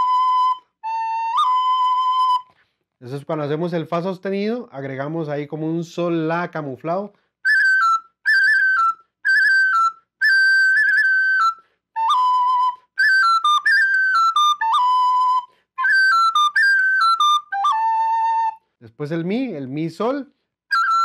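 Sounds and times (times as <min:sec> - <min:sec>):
recorder playing ornamented phrases: 0:06.8 - 0:21.0.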